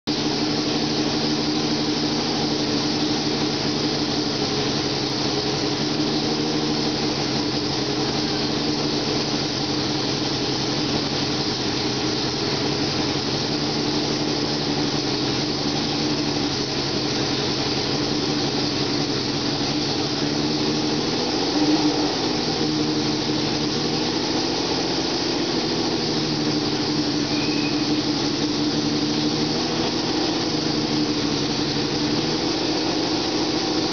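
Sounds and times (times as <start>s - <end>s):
racing car engine idling: 0.0s - 33.9s.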